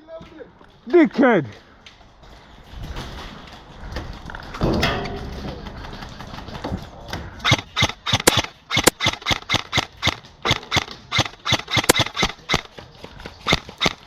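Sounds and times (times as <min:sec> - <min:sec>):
airsoft rifle shots: 0:07.4 - 0:12.8, 0:13.4 - 0:14.0.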